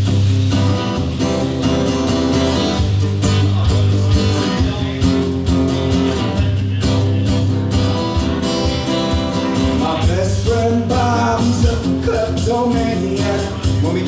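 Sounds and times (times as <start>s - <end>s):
bass guitar line: 0.0s - 14.0s
guitar strummed: 0.0s - 14.0s.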